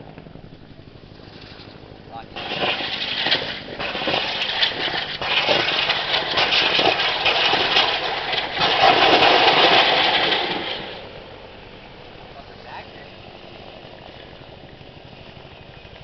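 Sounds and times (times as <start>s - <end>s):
helicopter: 0.0s - 2.9s, 11.0s - 16.0s.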